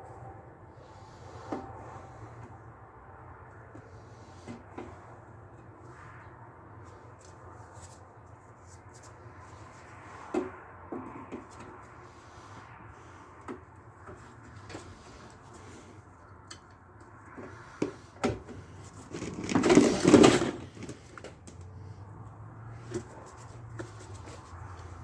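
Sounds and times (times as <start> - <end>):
metal scraping: 17.5 - 21.3.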